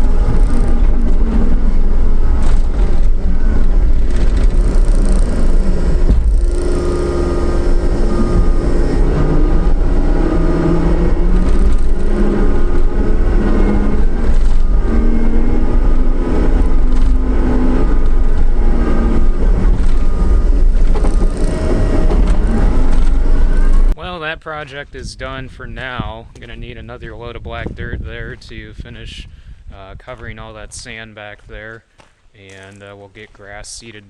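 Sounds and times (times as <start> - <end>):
diesel engine running hard: 0.0 - 24.0.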